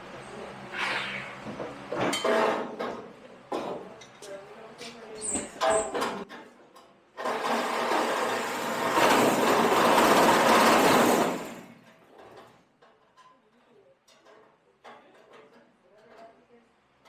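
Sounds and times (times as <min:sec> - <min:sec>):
power tool cutting sheet metal: 0:07.3 - 0:11.7.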